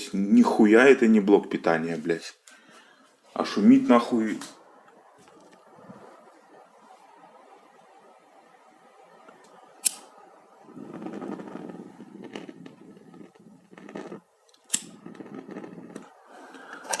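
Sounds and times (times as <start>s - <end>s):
sharp clicks: 9.2s - 10.2s, 14.5s - 15.1s
air rushing through wall socket: 9.3s - 17.0s.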